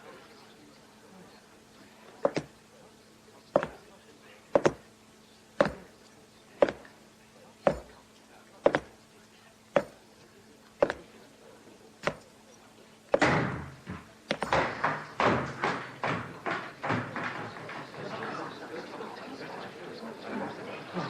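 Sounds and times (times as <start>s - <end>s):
sharp knocks or blows: 2.2s - 2.5s, 3.6s - 3.8s, 4.6s - 4.8s, 5.6s - 5.9s, 6.6s - 6.9s, 7.6s - 8.0s, 8.6s - 9.0s, 9.8s - 10.0s, 10.8s - 11.1s, 12.0s - 12.3s, 13.1s - 18.0s.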